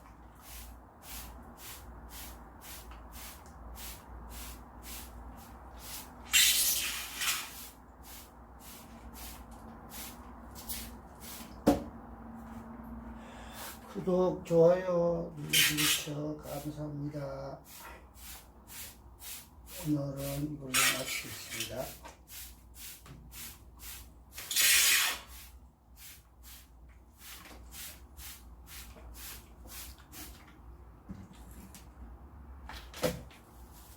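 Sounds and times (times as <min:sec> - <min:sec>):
spray bottle spritzing: 0:05.8 - 0:11.4, 0:23.8 - 0:26.6.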